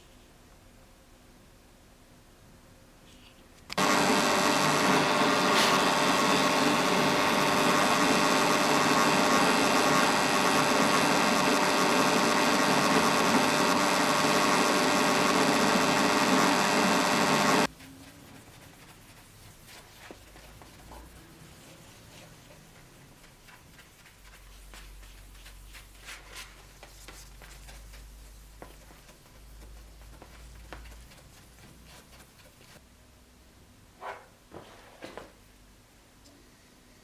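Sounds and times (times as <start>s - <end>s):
electric motor running: 3.8s - 17.7s.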